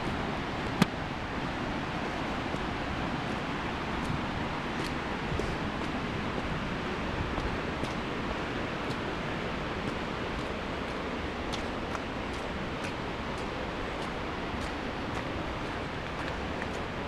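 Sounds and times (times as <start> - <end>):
river water and waterfall rushing: 0.0 - 17.0
faint light ticks: 9.9 - 16.9.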